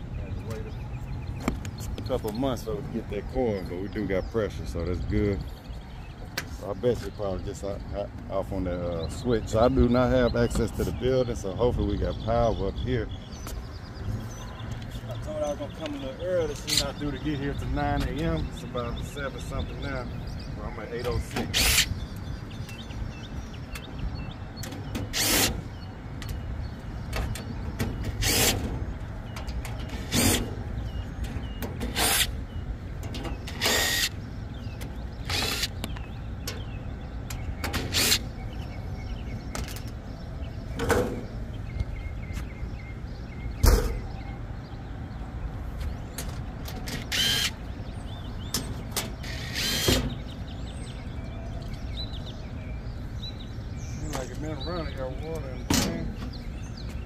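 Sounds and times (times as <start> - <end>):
cordless drill running: 33.6 - 34.1, 35.3 - 35.7, 47.1 - 47.5, 49.2 - 49.9.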